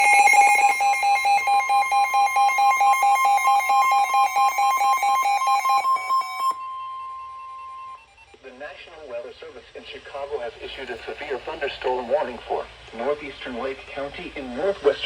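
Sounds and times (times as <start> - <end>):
electronic alert tones pulsing: 0.0 - 8.4
steady electronic tone: 0.0 - 8.4.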